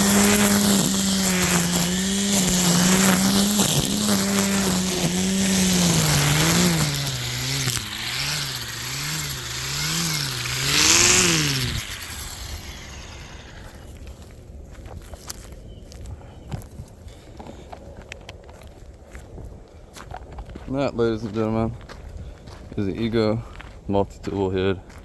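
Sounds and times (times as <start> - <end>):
string trimmer cutting grass: 0.0 - 14.4.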